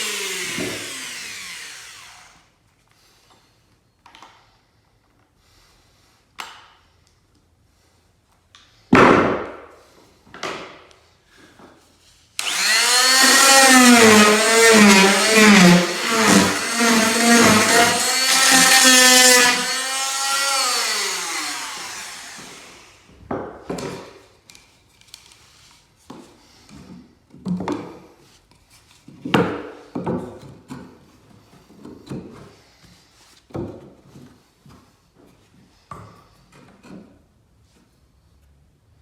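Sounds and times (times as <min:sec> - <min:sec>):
power tool motor winding down: 0:00.0 - 0:02.4, 0:12.4 - 0:23.1.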